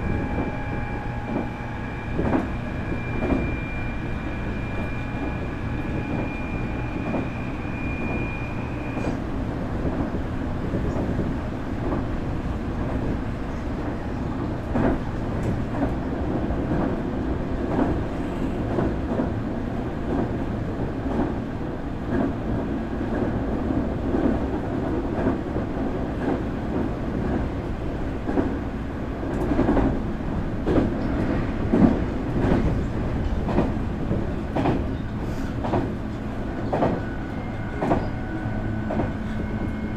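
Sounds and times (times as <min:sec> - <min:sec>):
train wheel rumble: 0:00.0 - 0:39.9
rail-joint clacks: 0:29.3 - 0:39.9.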